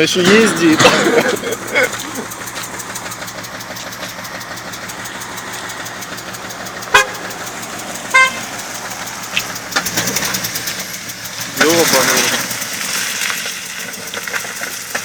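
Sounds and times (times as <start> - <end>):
car horn toots: 0.0 - 10.8
car engine knocking tick: 0.0 - 15.0.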